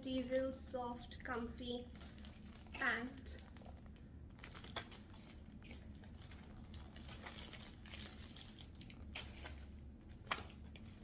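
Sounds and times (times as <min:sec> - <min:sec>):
packaging crinkling: 0:01.9 - 0:11.0.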